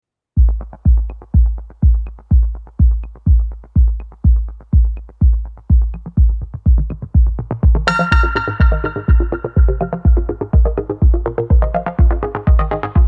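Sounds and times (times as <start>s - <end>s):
electronic music kick drum beat: 0.4s - 13.0s
synth chord: 7.9s - 11.1s.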